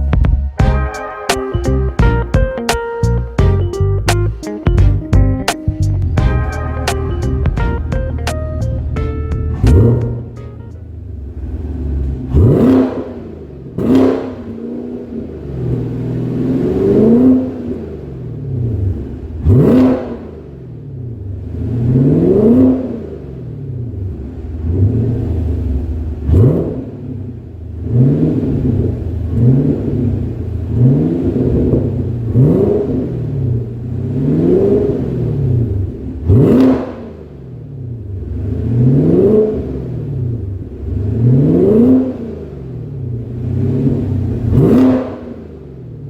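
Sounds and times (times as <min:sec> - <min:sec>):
car engine revving: 0:00.7 - 0:46.0.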